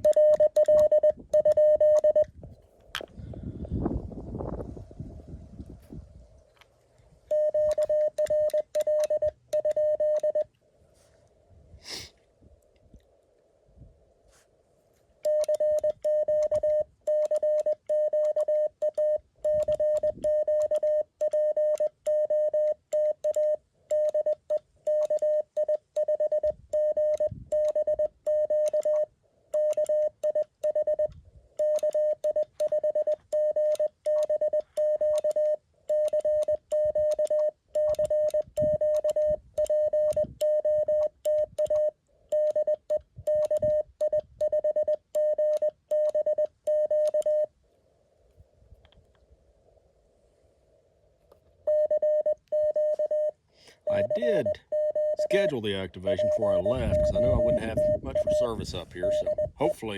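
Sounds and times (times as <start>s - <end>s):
morse code tone: 0.0s - 2.3s, 7.3s - 10.5s, 15.2s - 47.5s, 51.7s - 59.9s.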